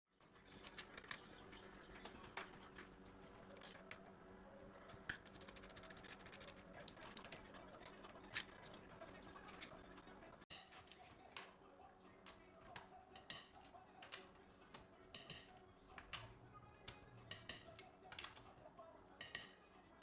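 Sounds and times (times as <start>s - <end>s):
metal tools clicking and knocking: 4.9s - 8.8s, 10.5s - 11.6s, 12.2s - 20.0s.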